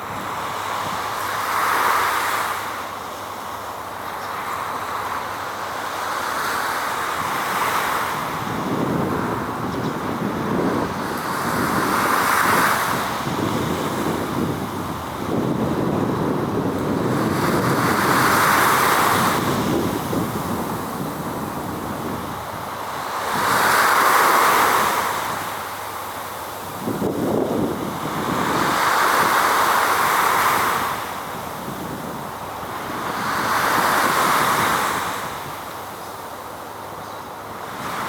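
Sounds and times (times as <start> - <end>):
waves washing in: 0.0 - 38.0
wind buffeting microphone: 7.2 - 25.6, 26.6 - 35.9.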